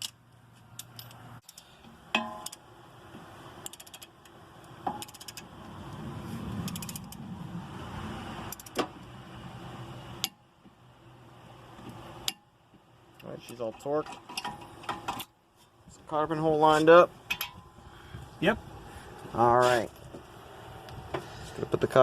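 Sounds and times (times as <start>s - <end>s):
torque wrench ratchet clicks: 3.6s - 4.2s, 5.0s - 5.5s, 6.6s - 7.2s, 8.5s - 8.8s.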